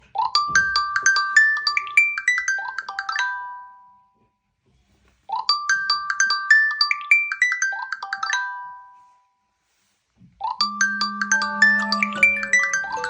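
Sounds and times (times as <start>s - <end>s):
smartphone ringtone melody: 5.3s - 9.1s, 10.4s - 13.0s.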